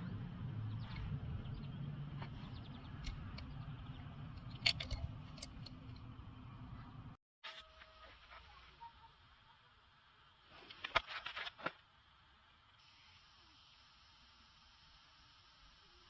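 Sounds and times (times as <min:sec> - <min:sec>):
metallic clinks of tool and bolts: 0:04.3 - 0:06.1.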